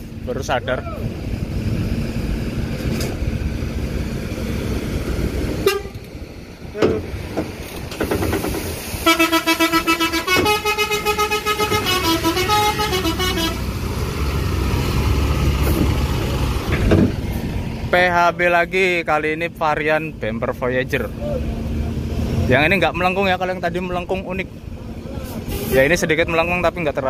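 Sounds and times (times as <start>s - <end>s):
bus engines running low: 0.0s - 27.0s
musical bus horn tune: 5.6s - 6.1s, 9.0s - 13.8s.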